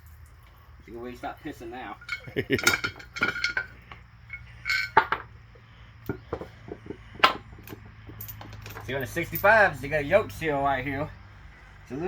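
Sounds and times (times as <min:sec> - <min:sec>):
metal parts and tools clanking: 0:01.9 - 0:05.4, 0:06.0 - 0:09.9.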